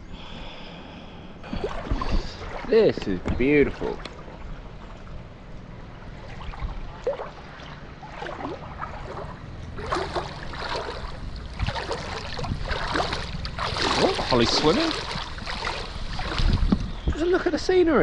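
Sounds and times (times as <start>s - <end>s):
water lapping: 1.4s - 17.6s
boat engine running: 1.4s - 17.7s
wind noise: 9.9s - 18.0s.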